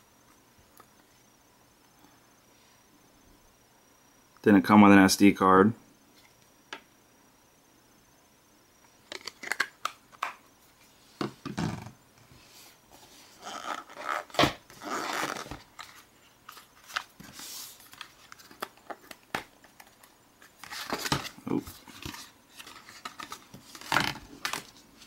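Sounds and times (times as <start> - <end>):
packaging rustling and crinkling: 13.3 - 25.0.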